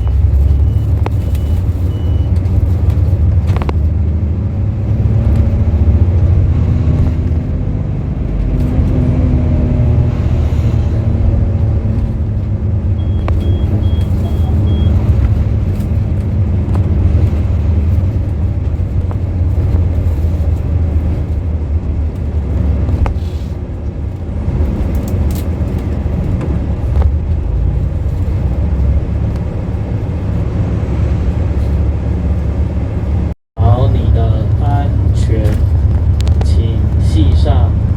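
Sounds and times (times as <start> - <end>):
quick high beeps: 0.0 - 2.3, 13.0 - 15.0
bus engine and road rumble: 0.0 - 37.9.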